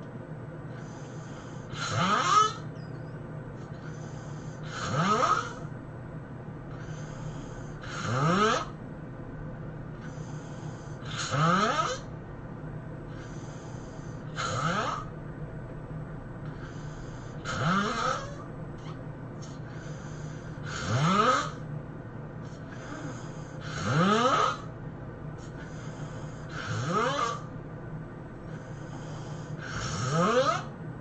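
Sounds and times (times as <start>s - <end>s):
breathy breath: 0.7s - 2.7s, 3.6s - 5.8s, 6.7s - 8.8s, 9.9s - 11.4s, 13.1s - 15.1s, 16.4s - 21.7s, 22.4s - 27.6s, 28.4s - 30.7s
person snoring heavily: 0.8s - 2.7s, 3.8s - 5.7s, 6.7s - 8.8s, 10.0s - 12.1s, 13.2s - 15.1s, 16.5s - 18.4s, 19.7s - 21.6s, 22.6s - 24.7s, 25.4s - 27.5s, 28.5s - 30.7s.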